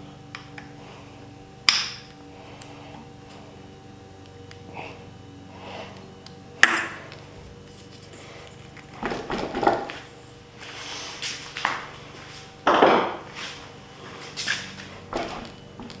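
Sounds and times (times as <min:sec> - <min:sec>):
tools and bike parts handled: 0:07.6 - 0:16.0.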